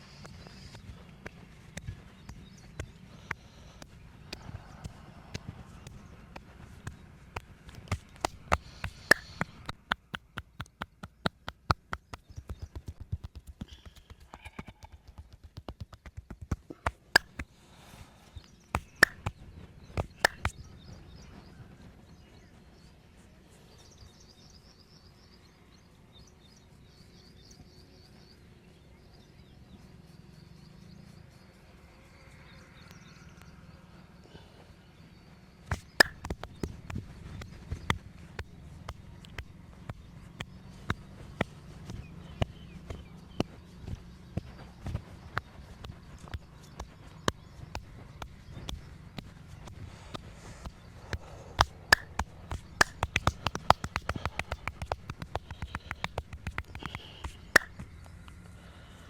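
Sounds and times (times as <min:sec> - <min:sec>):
hands slapping body: 0:00.2 - 0:17.5, 0:18.7 - 0:20.7, 0:35.7 - 0:57.9.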